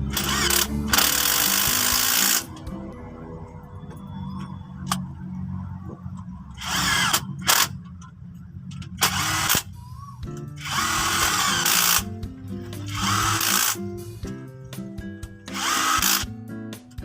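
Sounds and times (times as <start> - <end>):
power tool bursts: 0.0 - 2.6, 9.0 - 9.7, 10.6 - 12.1, 12.8 - 13.8, 15.5 - 16.3
background music: 0.0 - 17.0.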